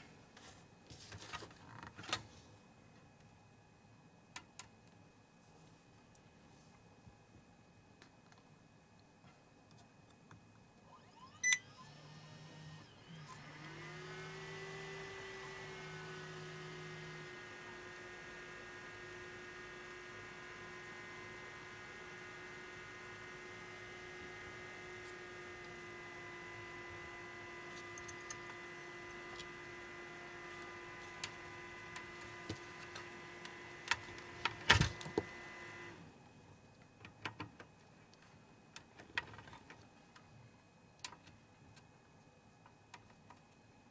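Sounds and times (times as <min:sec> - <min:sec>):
colour wheel motor whining: 0:10.8 - 0:36.2.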